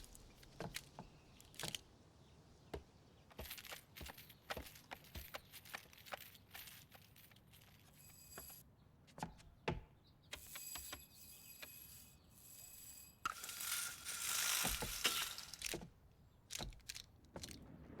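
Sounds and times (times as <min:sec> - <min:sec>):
small clicks taps and rustles: 0:00.0 - 0:01.9, 0:02.6 - 0:11.0, 0:13.3 - 0:17.6.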